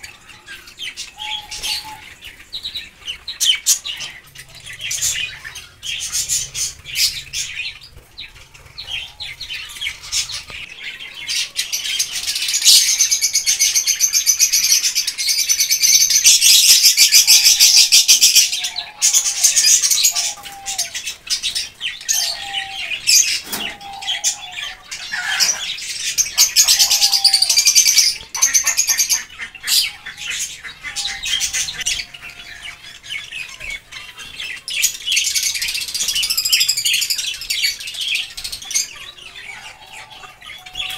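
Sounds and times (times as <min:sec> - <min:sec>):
cage birds chirping: 0:00.0 - 0:40.9.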